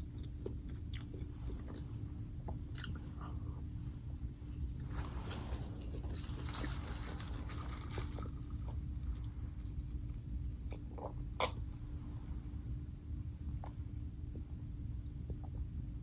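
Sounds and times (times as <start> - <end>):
close chewing of food: 0.0 - 11.6
steady low hum: 0.0 - 16.0.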